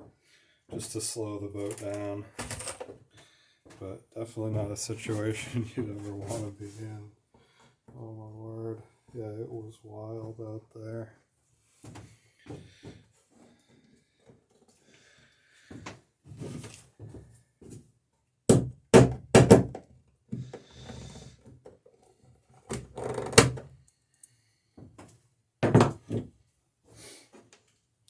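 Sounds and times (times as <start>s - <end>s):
hammer knocking on wood: 18.5s - 19.8s, 25.6s - 26.1s.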